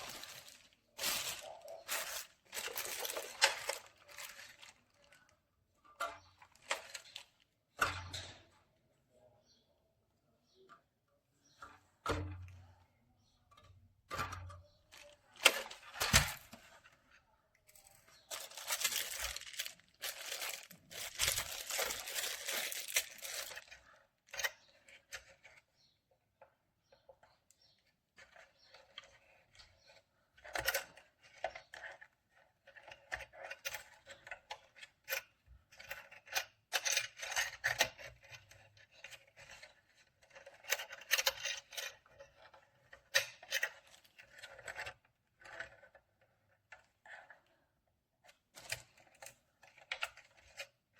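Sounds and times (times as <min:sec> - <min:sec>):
rustling or scraping: 0:00.0 - 0:05.4, 0:14.9 - 0:24.8.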